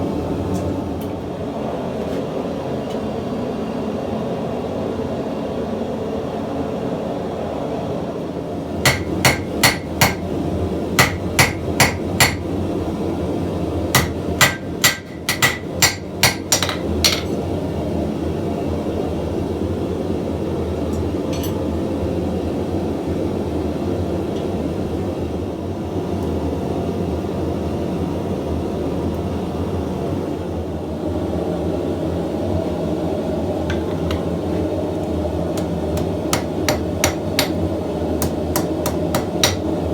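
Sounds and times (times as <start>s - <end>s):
hammer ringing on anvil: 8.9s - 10.2s, 11.0s - 12.5s, 14.0s - 17.3s, 36.0s - 37.6s, 38.2s - 39.7s
forge burner rushing: 32.3s - 39.9s.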